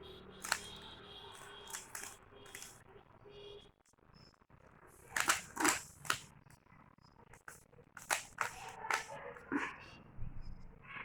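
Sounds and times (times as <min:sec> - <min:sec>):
puzzle cube layers clicking: 0:00.4 - 0:00.7, 0:01.7 - 0:02.7, 0:05.1 - 0:06.3, 0:07.4 - 0:09.1.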